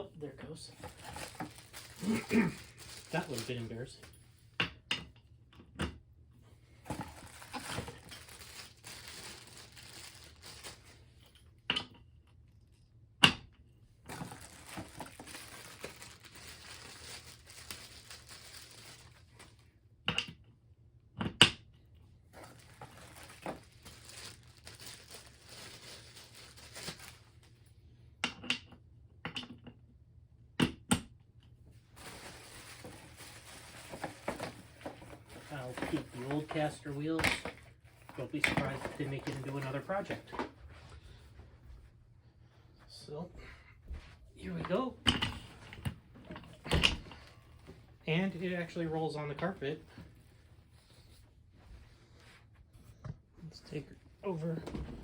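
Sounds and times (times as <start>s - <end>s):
soft handling noise: 0.1s - 4.6s, 6.5s - 11.6s, 14.0s - 19.7s, 22.3s - 27.7s, 31.6s - 55.0s.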